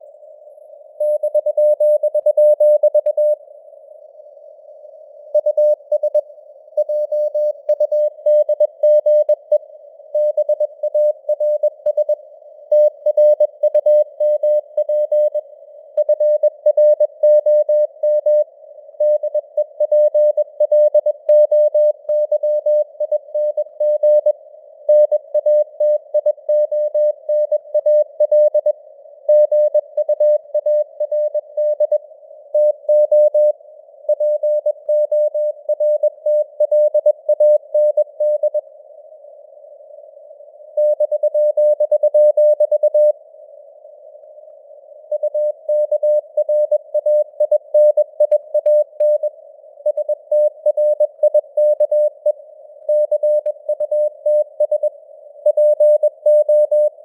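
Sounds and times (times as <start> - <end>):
faint radio hiss: 3.4 - 5.4, 30.8 - 32.9, 38.1 - 42.3, 43.1 - 47.4, 48.1 - 50.6, 52.1 - 55.5.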